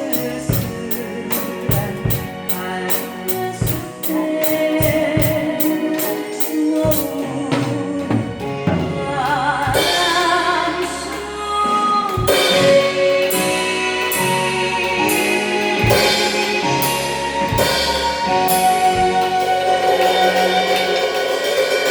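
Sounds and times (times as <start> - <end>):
woman singing with vibrato: 0.0 - 20.1
drum kit playing: 0.0 - 21.9
recorded band music: 0.0 - 21.9
cymbal crashes: 12.2 - 21.9.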